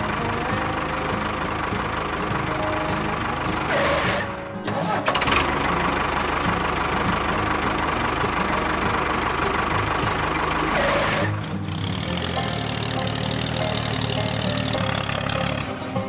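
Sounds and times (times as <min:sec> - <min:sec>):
tractor engine idling: 0:00.0 - 0:16.0.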